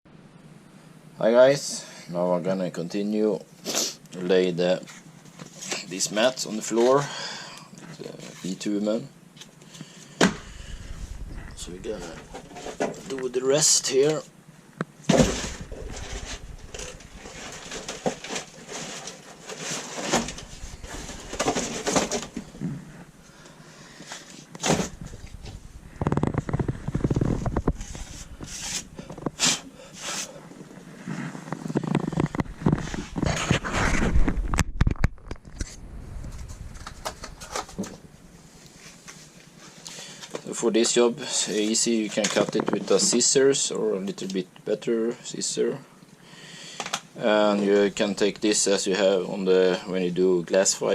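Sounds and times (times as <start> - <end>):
mats rustling and crinkling: 15.2 - 40.6.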